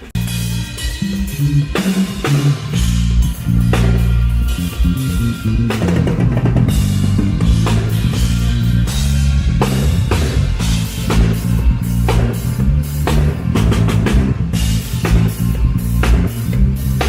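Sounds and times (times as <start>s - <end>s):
drum kit with crashes: 0.0s - 17.0s
rock band playing: 0.0s - 17.0s.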